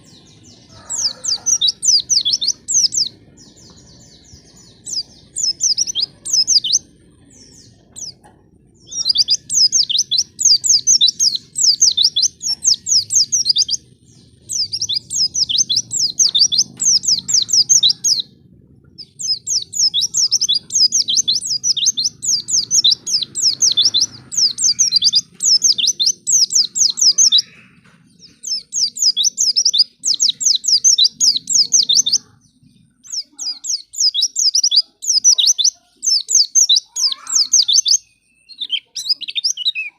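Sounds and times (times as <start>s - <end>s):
bird twittering song: 0.0s - 39.9s.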